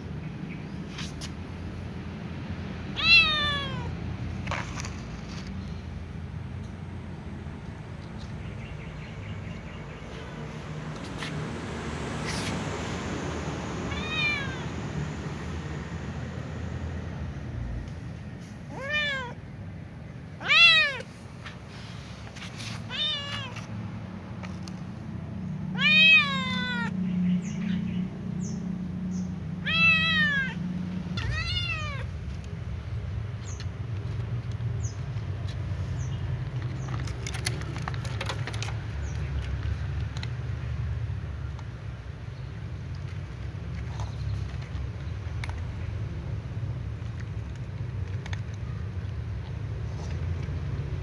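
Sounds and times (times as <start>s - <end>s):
cat meowing: 2.9s - 4.0s, 13.9s - 14.8s, 18.7s - 19.4s, 20.4s - 21.1s, 22.9s - 23.6s, 25.7s - 27.0s, 29.6s - 32.1s.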